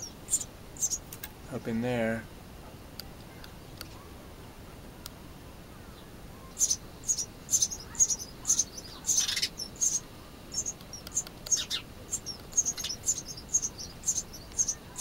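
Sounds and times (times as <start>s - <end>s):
nestling birds cheeping: 0.0s - 1.7s, 5.7s - 15.0s.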